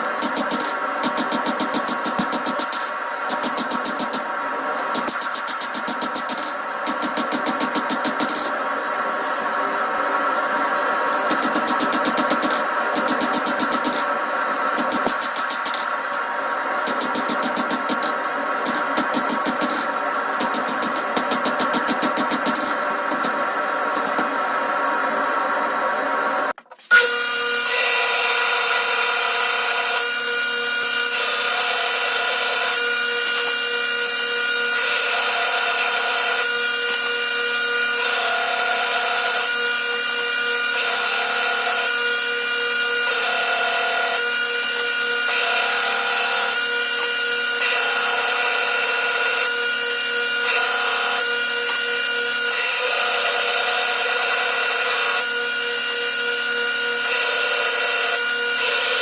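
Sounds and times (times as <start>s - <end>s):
power tool motor running: 27.0s - 59.0s.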